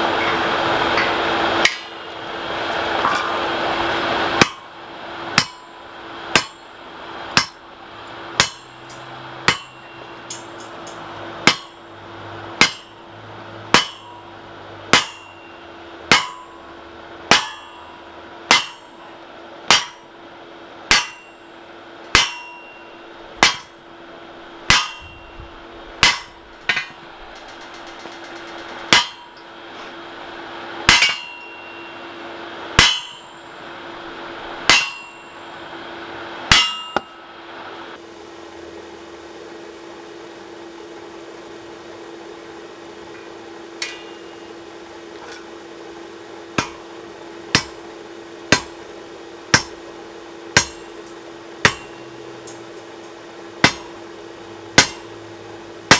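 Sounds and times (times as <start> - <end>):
steady low hum: 0.0 - 55.9
hammer striking steel on anvil: 0.1 - 2.0, 4.4 - 4.7, 5.3 - 6.7, 7.3 - 19.1, 19.7 - 20.2, 20.9 - 23.8, 24.6 - 29.5, 30.8 - 35.6, 36.4 - 37.2, 43.1 - 44.6, 46.5 - 48.9, 49.5 - 49.9, 50.5 - 55.9.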